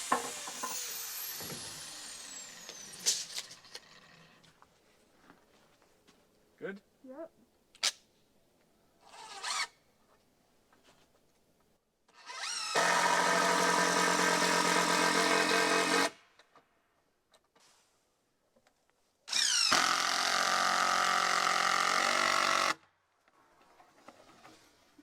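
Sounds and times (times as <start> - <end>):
power drill driving screws: 0.0 - 4.3, 9.0 - 9.8, 12.1 - 16.2, 19.3 - 22.8.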